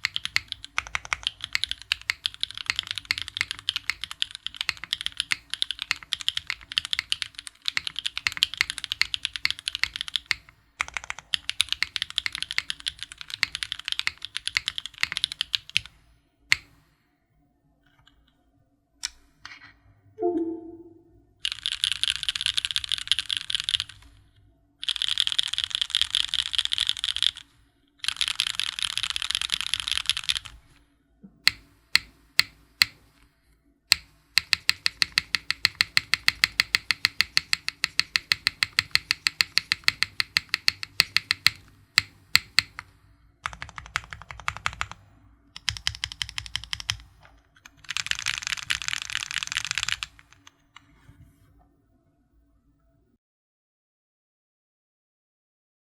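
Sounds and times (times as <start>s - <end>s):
mechanical keyboard typing: 0.0s - 16.7s, 21.4s - 24.1s, 24.8s - 30.6s, 33.9s - 45.0s, 45.6s - 50.5s.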